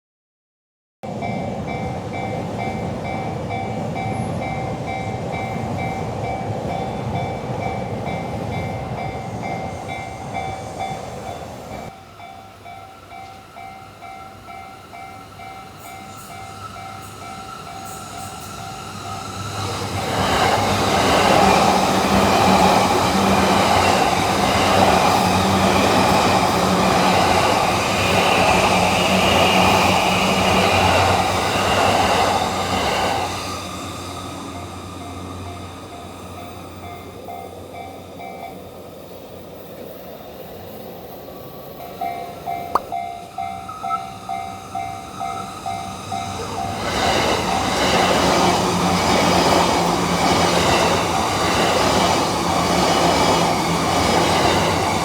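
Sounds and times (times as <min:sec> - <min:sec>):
train passing loudly: 0:01.0 - 0:55.0
level crossing alarm bell: 0:41.9 - 0:47.0.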